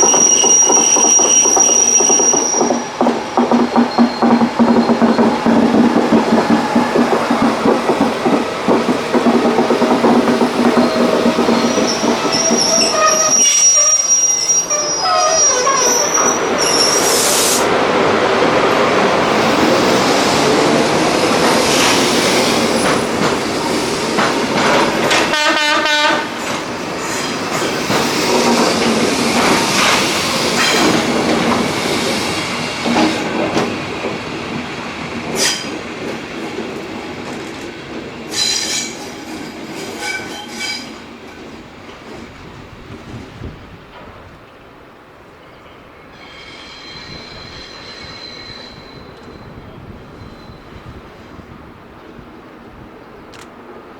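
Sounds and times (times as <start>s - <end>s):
wheels squealing on rails: 0.0s - 8.4s, 9.5s - 17.8s, 35.3s - 35.8s, 38.3s - 41.1s, 45.5s - 51.4s
train passing: 0.0s - 53.9s.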